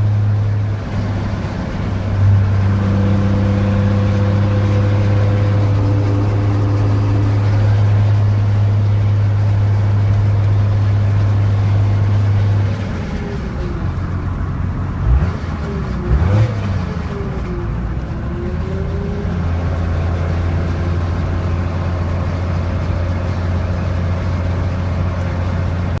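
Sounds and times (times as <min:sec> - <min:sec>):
diesel engine droning: 0:00.0 - 0:26.0
gliding tones: 0:01.9 - 0:10.4.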